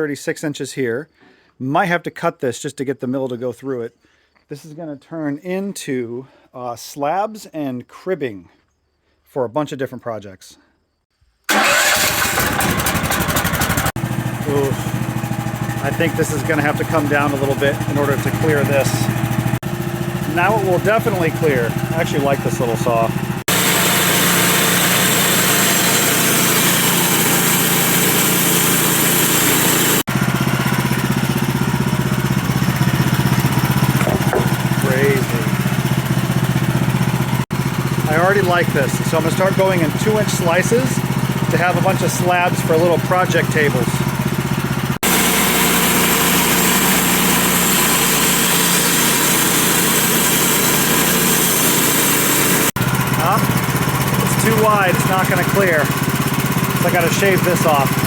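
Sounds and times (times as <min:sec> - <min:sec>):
sawmill engine running: 0:11.5 - 0:58.0
saw blade cutting wood: 0:15.7 - 0:19.4, 0:20.1 - 0:30.1, 0:32.5 - 0:35.8, 0:45.0 - 0:56.0, 0:56.8 - 0:58.0.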